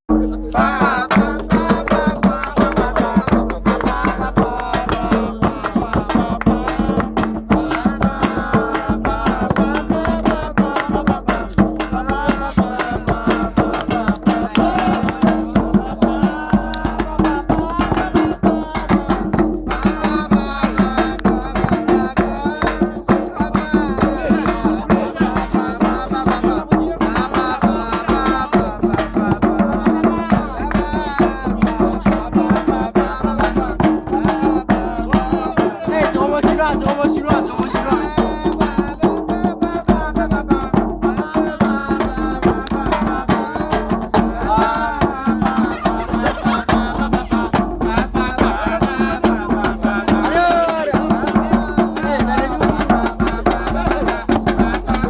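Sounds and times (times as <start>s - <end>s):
fast hand-drum beats: 0.1s - 55.0s
person singing: 0.1s - 55.0s.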